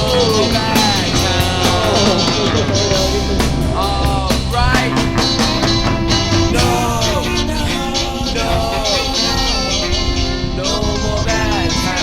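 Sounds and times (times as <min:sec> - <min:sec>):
drum beat: 0:00.0 - 0:09.2
bass: 0:00.0 - 0:12.0
guitar: 0:00.0 - 0:12.0
person singing: 0:00.0 - 0:12.0.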